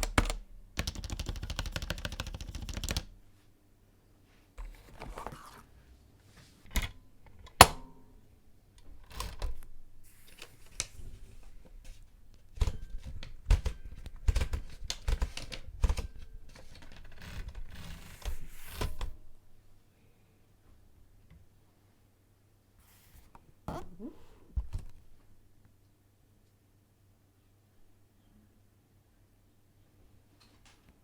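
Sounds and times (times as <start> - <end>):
keyboard keys clicking: 0.0 - 3.1.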